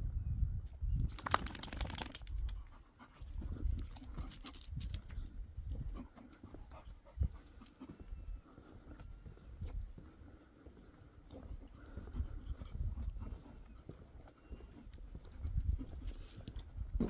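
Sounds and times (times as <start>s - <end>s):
dog panting: 5.6s - 16.8s.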